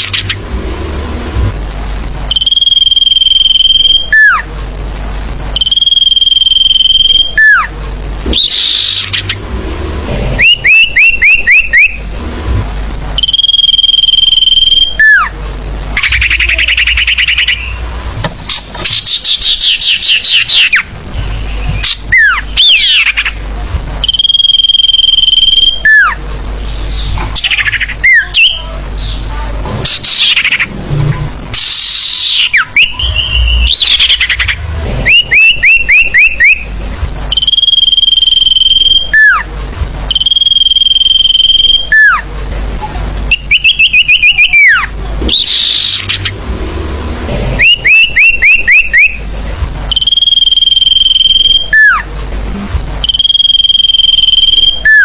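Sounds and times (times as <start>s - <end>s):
steady low hum: 0.0s - 55.0s
bird song whistle and trills: 2.3s - 4.5s, 5.6s - 7.7s, 8.3s - 9.4s, 10.4s - 12.1s, 13.2s - 15.4s, 16.0s - 17.9s, 18.5s - 23.4s, 24.0s - 26.2s, 29.9s - 30.7s, 31.6s - 39.5s, 40.1s - 42.2s, 43.3s - 46.3s, 47.6s - 49.2s, 49.9s - 52.0s, 53.0s - 55.0s.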